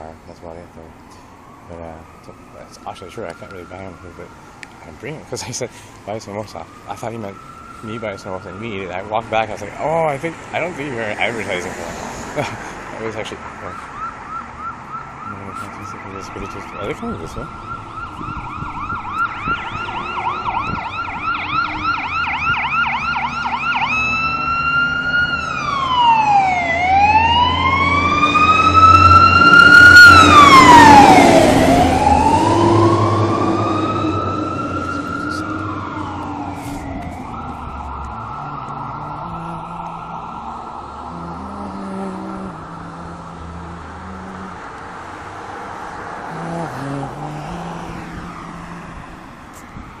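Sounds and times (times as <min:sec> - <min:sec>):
emergency vehicle siren: 0:00.0 - 0:50.0
street traffic noise: 0:00.0 - 0:50.0.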